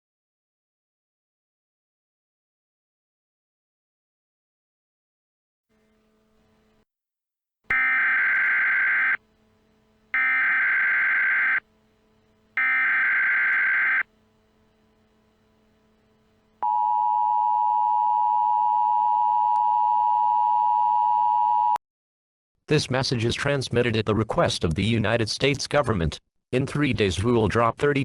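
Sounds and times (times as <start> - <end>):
two-tone attention signal: 7.7 - 9.2, 10.2 - 11.6, 12.6 - 14.1
harsh buzzy data bursts: 7.7 - 16.6.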